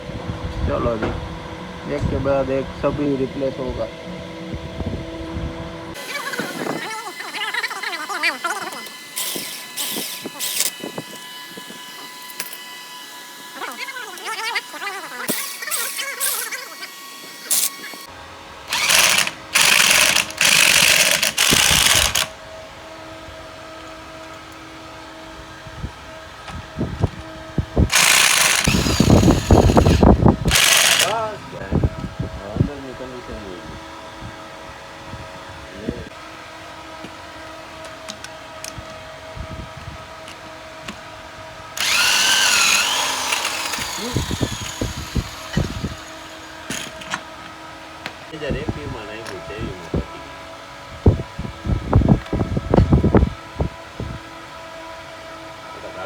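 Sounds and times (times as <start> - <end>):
power tool whining: 5.9 - 24.8, 26.4 - 31.8, 41.7 - 48.2
pneumatic impact wrench bursts: 6.0 - 12.6, 13.4 - 18.1, 18.7 - 22.3, 27.9 - 31.3, 41.8 - 47.2.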